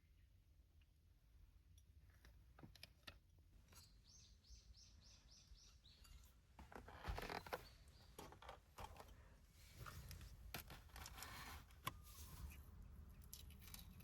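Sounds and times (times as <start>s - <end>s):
faint clicks of small objects handled: 8.2s - 14.0s.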